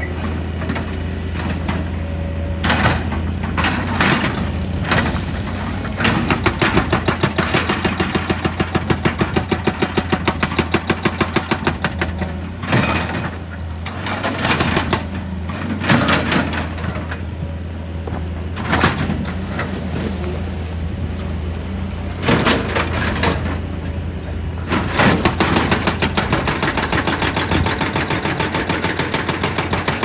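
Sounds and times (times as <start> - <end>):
excavator engine running: 0.0 - 30.0.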